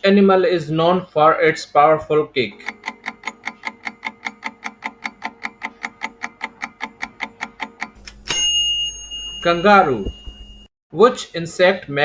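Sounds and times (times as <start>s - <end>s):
countdown timer ticking: 2.5s - 8.0s
bell-like ding: 8.2s - 10.7s.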